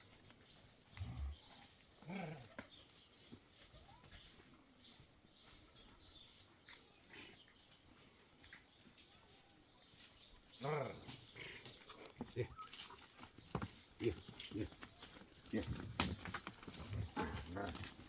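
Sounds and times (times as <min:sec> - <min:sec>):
faint high bird chirps: 0:00.0 - 0:14.6.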